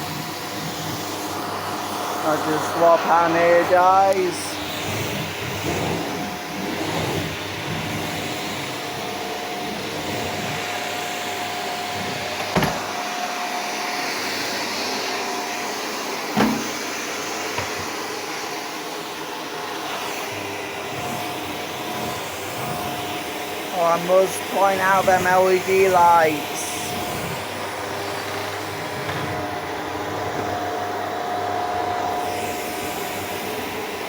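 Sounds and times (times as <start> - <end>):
vacuum cleaner running: 0.0 - 34.0.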